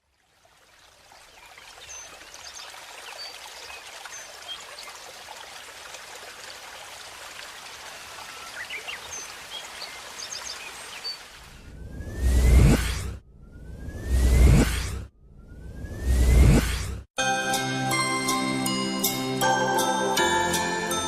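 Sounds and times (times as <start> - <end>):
running water: 0.0 - 11.6.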